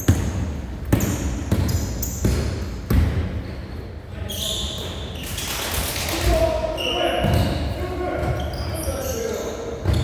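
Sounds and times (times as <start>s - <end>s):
sneakers squeaking: 0.0s - 5.6s, 6.3s - 10.0s
basketball bouncing on wooden floor: 0.1s - 3.2s.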